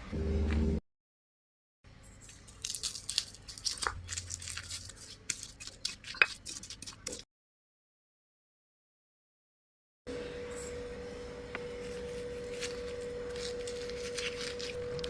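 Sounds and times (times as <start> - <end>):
scraping and crinkling: 2.2 - 7.2, 11.8 - 15.0.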